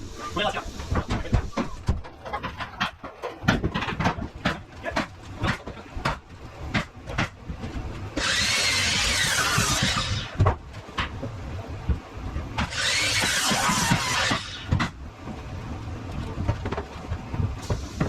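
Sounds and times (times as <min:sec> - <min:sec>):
power saw cutting lumber: 0:08.2 - 0:10.4, 0:12.6 - 0:14.8.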